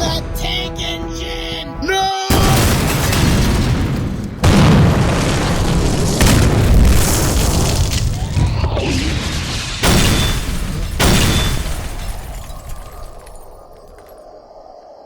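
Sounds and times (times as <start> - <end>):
explosion boom with deep rumble: 2.3 - 13.2.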